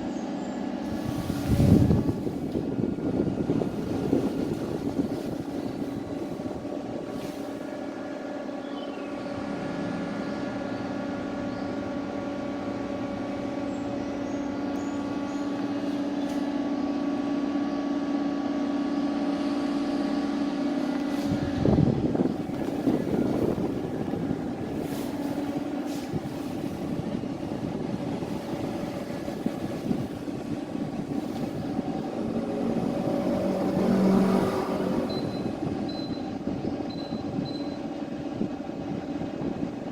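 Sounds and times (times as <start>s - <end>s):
air conditioner humming: 0.0s - 39.9s.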